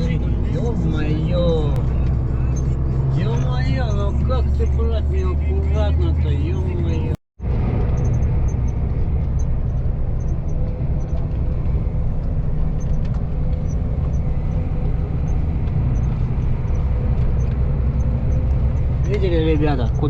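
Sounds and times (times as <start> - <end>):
road noise: 0.0 - 20.0
truck engine drone: 0.0 - 20.0.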